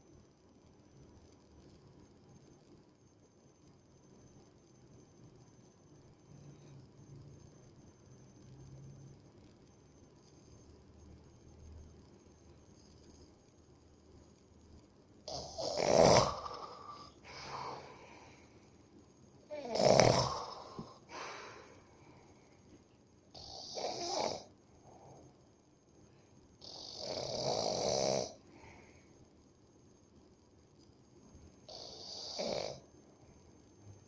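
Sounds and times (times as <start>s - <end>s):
person snoring heavily: 15.3s - 18.3s, 19.5s - 21.8s, 23.4s - 24.5s, 26.6s - 28.4s, 31.7s - 32.8s.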